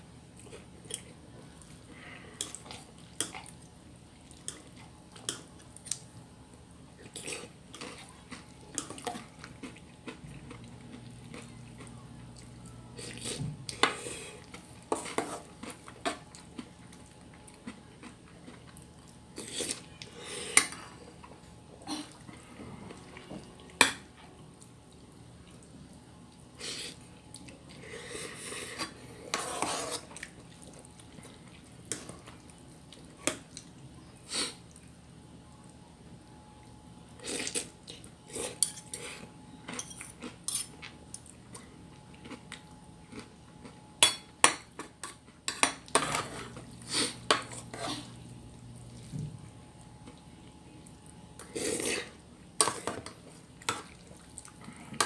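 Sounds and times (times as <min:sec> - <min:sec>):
cutlery clinking on dishes: 0:38.4 - 0:41.3.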